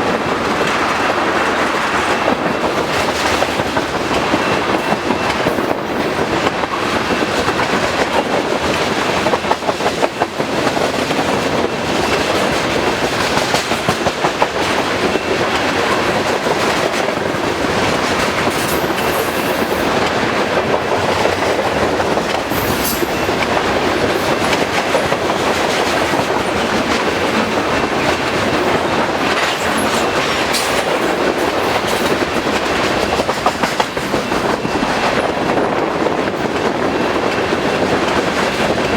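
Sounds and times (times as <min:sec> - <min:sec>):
freight train rumbling past: 0:00.0 - 0:38.9
wheels clacking over rail joints: 0:00.0 - 0:38.9
high wheel squeals: 0:18.4 - 0:20.0, 0:22.4 - 0:31.9.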